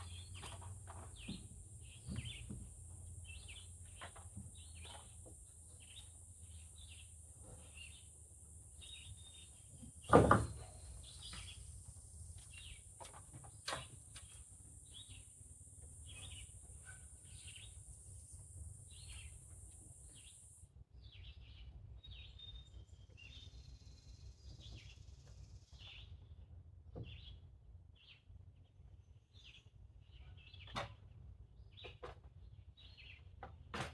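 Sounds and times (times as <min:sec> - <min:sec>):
small birds chirping: 0:00.0 - 0:20.6
steady high hiss: 0:00.0 - 0:20.6
loud thump: 0:09.7 - 0:11.5.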